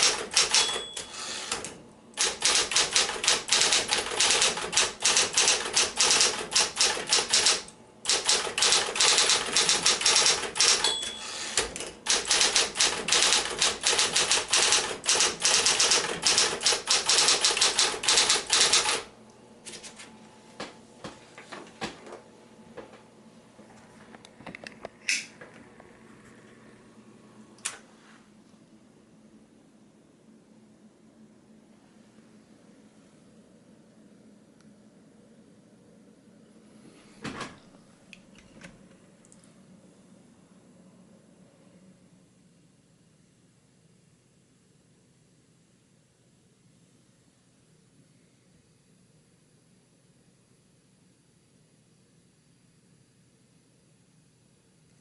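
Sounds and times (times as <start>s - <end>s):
typewriter bell ringing: 0.0s - 1.4s, 2.2s - 19.0s
electric typewriter typing: 0.0s - 19.1s.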